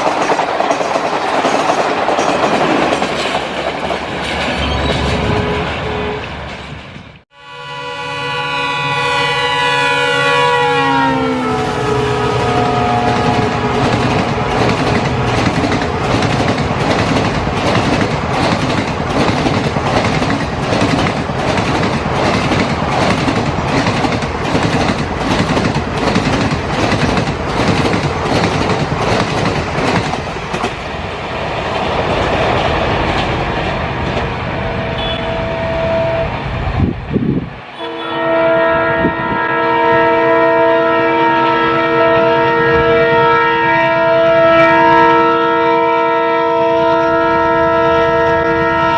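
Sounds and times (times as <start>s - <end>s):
train wheels clattering over rail joints: 0.0s - 7.2s, 13.3s - 30.9s
locomotive horn blast: 4.6s - 6.4s, 7.3s - 16.2s, 34.6s - 36.4s, 37.8s - 48.9s.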